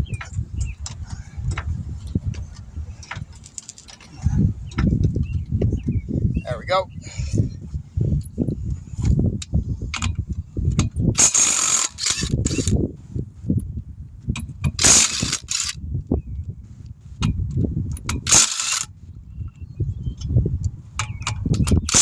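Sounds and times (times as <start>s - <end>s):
wind rumbling on microphone: 0.0s - 22.0s
harsh bursts of tool noise: 11.2s - 12.8s, 14.8s - 15.8s, 18.2s - 18.9s.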